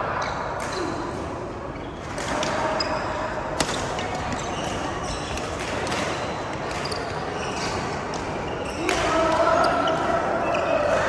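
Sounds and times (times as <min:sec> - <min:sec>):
racket hitting shuttlecock: 0:02.0 - 0:09.2.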